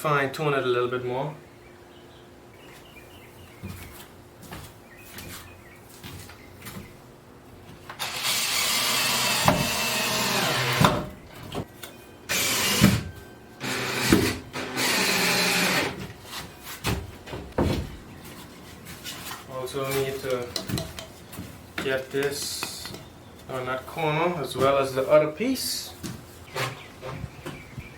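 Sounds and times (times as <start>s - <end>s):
power drill driving screws: 8.0s - 11.0s, 12.3s - 16.0s.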